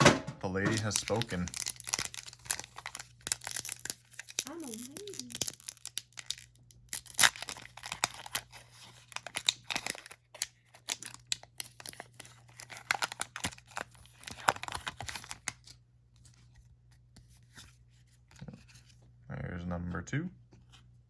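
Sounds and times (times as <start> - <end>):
foil wrapper tearing and crinkling: 0.7 - 15.8.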